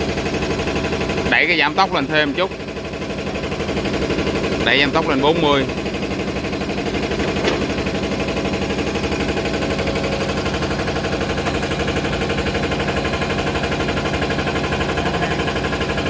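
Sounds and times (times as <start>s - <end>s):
machine mechanical clatter: 3.8s - 16.0s.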